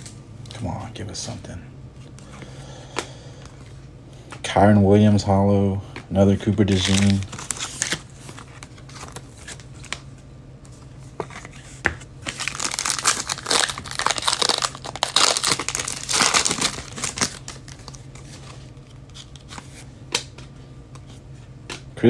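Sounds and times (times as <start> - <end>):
card pack wrappers crinkling and tearing: 6.6 - 10.0, 12.2 - 20.3.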